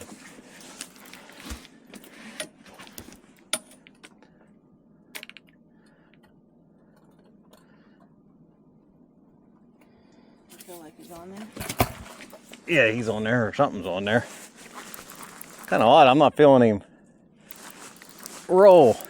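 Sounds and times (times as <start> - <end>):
fishing tackle clicking and rattling: 14.7 - 15.8, 17.5 - 19.0.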